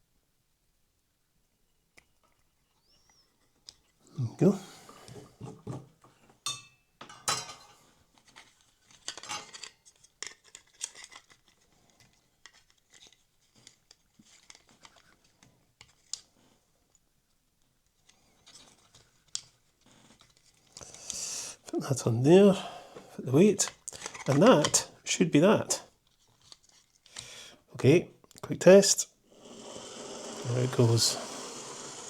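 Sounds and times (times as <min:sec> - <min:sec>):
small parts clicking and scraping: 0:08.2 - 0:15.4.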